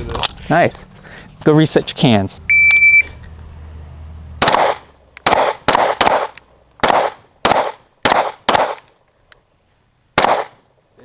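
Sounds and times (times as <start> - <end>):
handgun shots with echo: 4.4 - 8.9, 10.2 - 10.6.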